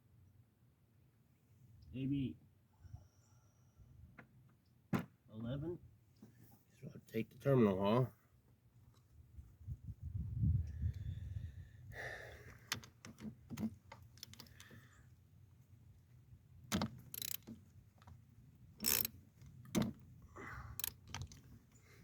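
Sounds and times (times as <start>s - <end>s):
metal tools clinking: 17.1s - 17.5s, 20.8s - 21.4s.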